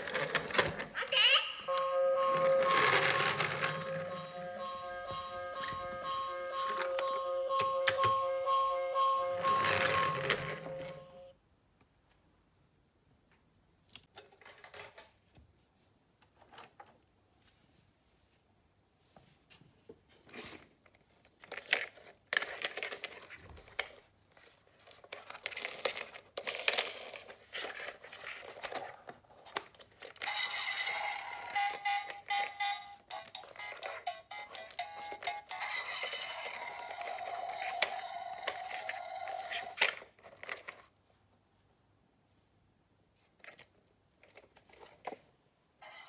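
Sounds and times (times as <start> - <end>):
toy cars clicking and rustling: 0.0 - 1.0, 2.4 - 6.1, 20.9 - 40.9
electronic toy siren: 1.7 - 11.2, 30.3 - 39.8.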